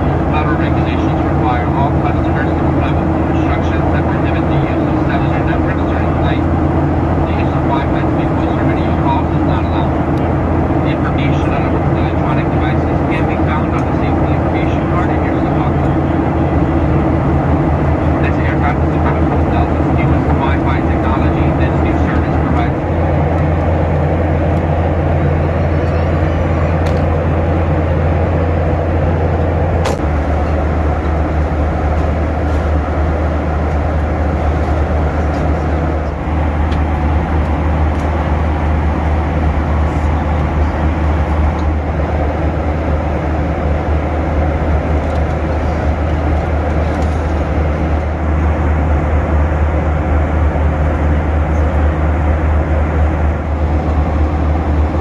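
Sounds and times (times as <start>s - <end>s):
jet engines droning: 0.0s - 55.0s
rush of airflow: 22.7s - 55.0s.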